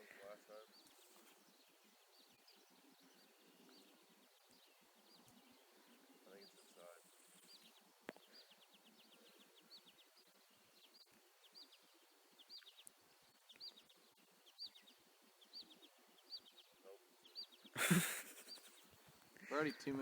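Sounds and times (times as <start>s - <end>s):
small bird singing: 0.0s - 20.0s.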